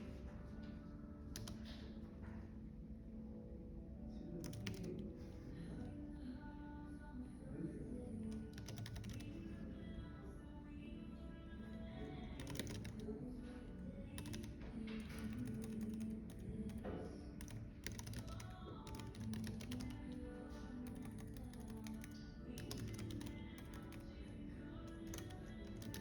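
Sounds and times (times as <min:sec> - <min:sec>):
computer keyboard typing: 0:01.2 - 0:02.3, 0:04.3 - 0:06.1, 0:08.2 - 0:09.8, 0:11.7 - 0:26.0.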